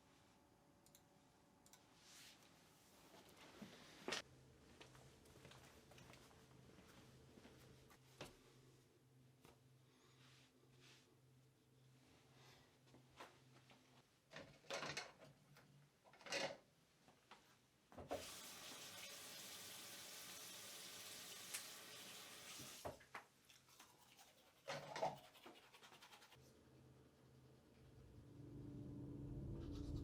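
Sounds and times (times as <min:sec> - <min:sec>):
water running: 0:18.1 - 0:23.1.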